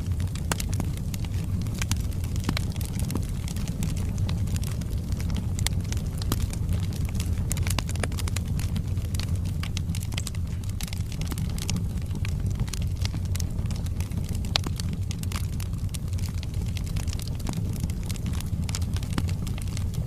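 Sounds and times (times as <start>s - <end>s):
logs crackling and popping: 0.0s - 20.0s
low rumble of flames: 0.0s - 20.0s.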